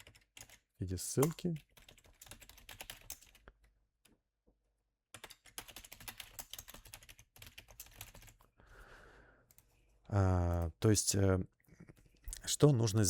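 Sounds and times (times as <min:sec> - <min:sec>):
typing on computer keyboard: 0:00.0 - 0:03.7, 0:05.1 - 0:08.5.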